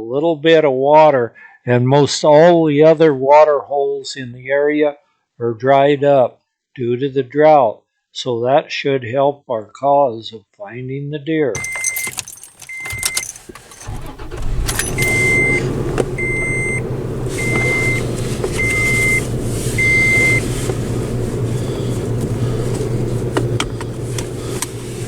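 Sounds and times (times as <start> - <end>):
car engine starting and running: 11.6 - 25.0
vehicle warning chime beeping: 11.6 - 25.0.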